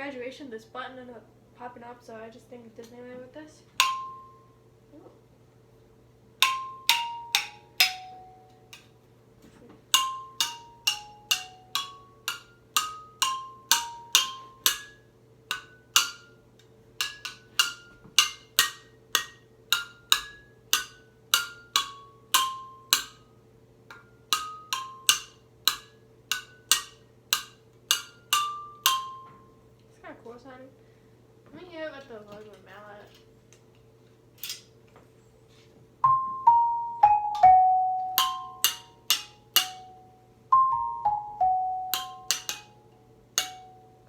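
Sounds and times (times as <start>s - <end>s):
xylophone tune: 36.1s - 38.9s, 39.6s - 42.6s.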